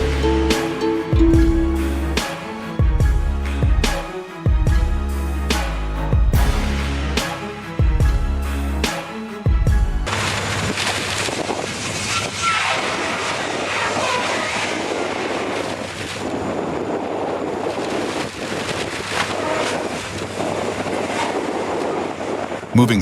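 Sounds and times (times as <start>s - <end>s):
wind on microphone: 11.0s - 22.8s.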